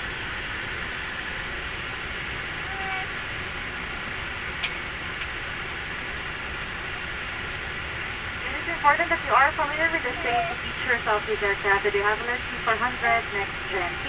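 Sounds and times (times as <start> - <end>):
cabin ventilation hiss and hum: 0.1 - 14.0.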